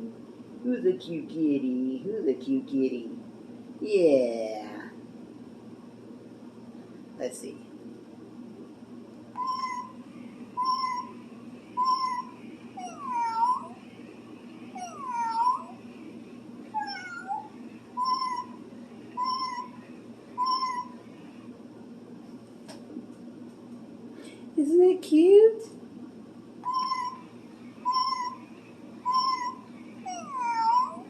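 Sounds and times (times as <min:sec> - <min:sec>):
electronic toy meows: 0:09.4 - 0:10.0, 0:10.6 - 0:11.2, 0:11.8 - 0:13.8, 0:14.8 - 0:15.8, 0:16.7 - 0:18.6, 0:19.2 - 0:19.8, 0:20.4 - 0:21.0, 0:26.6 - 0:31.0.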